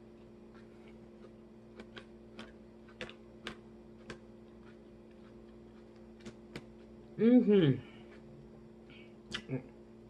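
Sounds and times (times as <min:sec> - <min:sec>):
crunchy chewing: 0:00.0 - 0:07.1
faint steady hum: 0:00.0 - 0:10.0.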